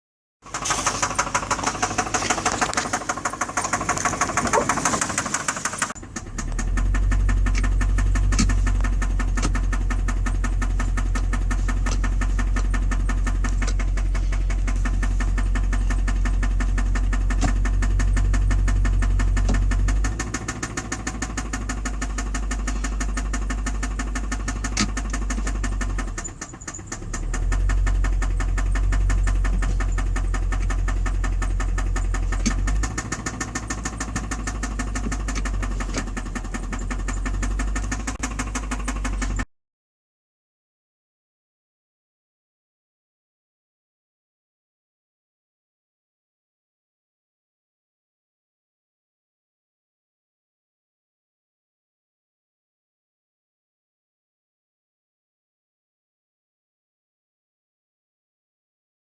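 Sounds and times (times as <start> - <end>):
engine knocking: 0.4 - 39.5.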